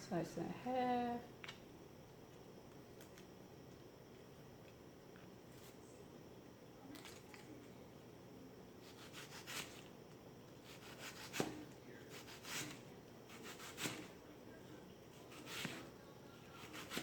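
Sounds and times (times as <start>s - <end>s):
knife slicing onion: 8.8s - 9.9s, 10.6s - 14.2s, 15.1s - 15.9s, 16.5s - 17.0s.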